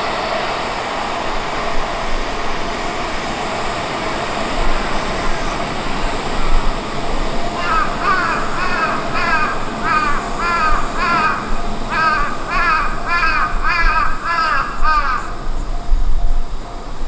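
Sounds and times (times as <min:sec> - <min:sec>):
crow cawing: 0:06.2 - 0:15.7.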